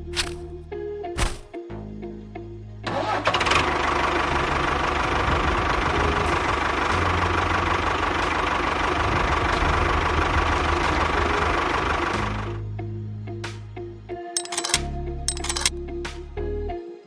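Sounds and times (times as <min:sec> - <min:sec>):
small engine running: 0:14.4 - 0:15.7.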